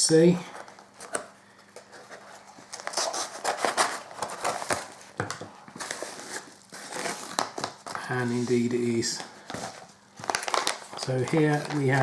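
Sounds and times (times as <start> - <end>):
plastic packaging crinkling: 5.8 - 12.0.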